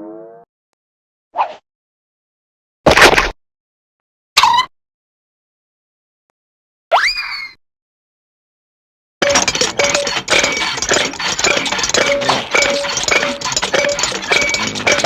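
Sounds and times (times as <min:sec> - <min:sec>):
cartoon clatter of knocks and rattles: 0:09.2 - 0:15.0.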